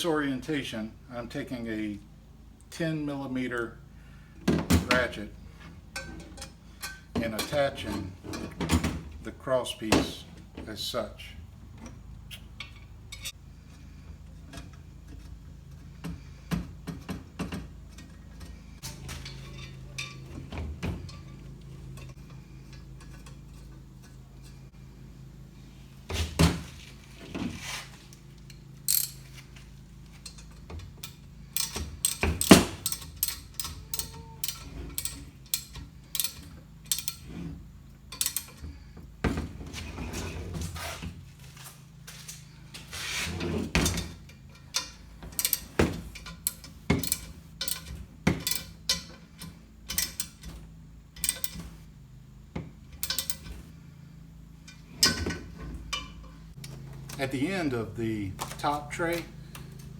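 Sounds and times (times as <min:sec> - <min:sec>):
metal parts knocking: 0:28.8 - 0:29.4, 0:30.1 - 0:37.4, 0:38.1 - 0:39.4, 0:43.7 - 0:50.6, 0:51.2 - 0:51.8, 0:52.9 - 0:53.6
socket ratchet clicking: 0:28.9 - 0:29.2, 0:31.0 - 0:37.2, 0:44.8 - 0:45.8, 0:46.4 - 0:48.8.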